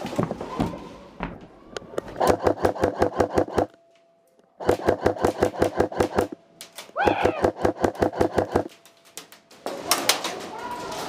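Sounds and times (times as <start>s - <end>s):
airsoft rifle firing bursts: 2.2s - 3.8s, 4.6s - 6.4s, 7.1s - 8.7s.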